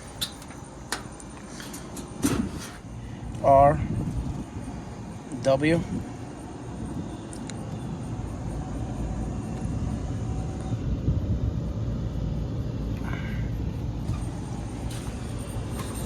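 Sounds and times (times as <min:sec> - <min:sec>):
faint steady hum: 0:00.0 - 0:16.0
hvac unit low rumble: 0:00.0 - 0:16.0.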